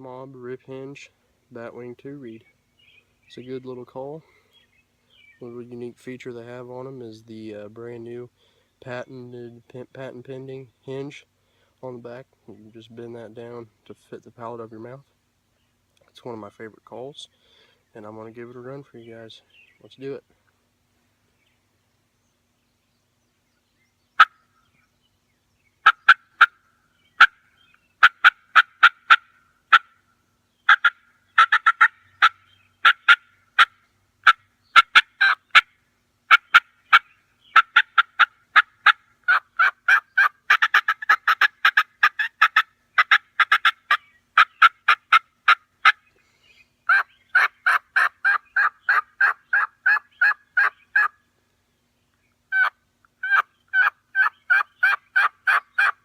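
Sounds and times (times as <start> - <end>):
turkey mouth call notes: 30.7 - 35.7, 36.3 - 46.1, 52.5 - 56.0.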